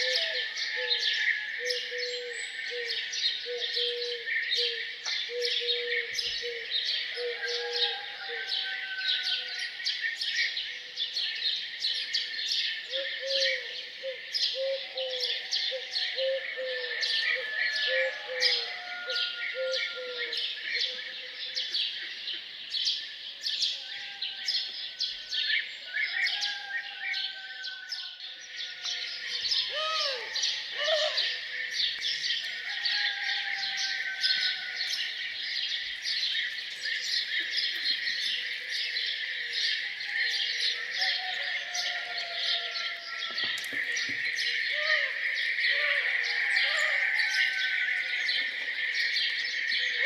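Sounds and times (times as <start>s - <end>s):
songbirds chirping and singing: 0.0s - 50.0s.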